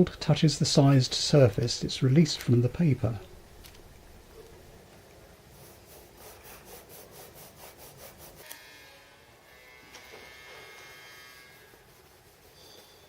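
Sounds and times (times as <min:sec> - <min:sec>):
soft brushing strokes: 0:00.3 - 0:08.4, 0:11.4 - 0:13.0.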